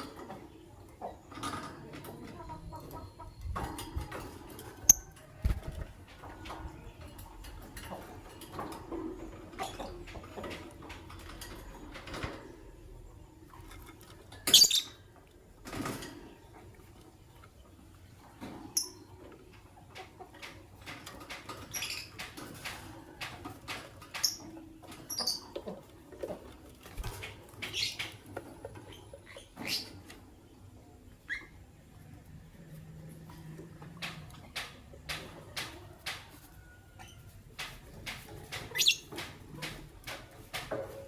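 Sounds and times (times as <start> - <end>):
lovebirds chirping: 14.5 - 15.0.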